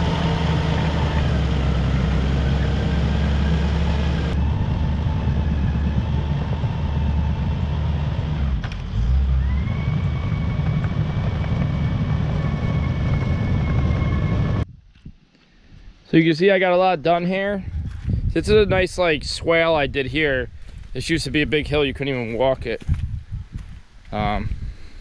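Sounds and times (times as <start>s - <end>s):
bulldozer diesel engine drone: 0.0s - 14.7s
high engine whine: 0.0s - 14.7s.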